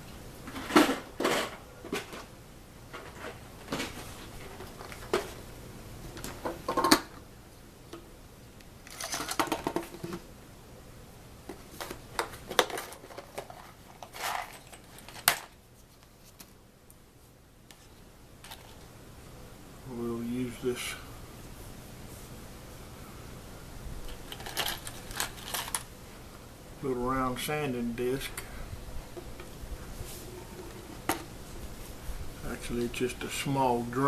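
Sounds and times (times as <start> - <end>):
small tools handled on workbench: 8.8 - 10.2, 11.5 - 16.5, 17.7 - 18.8, 24.1 - 25.9.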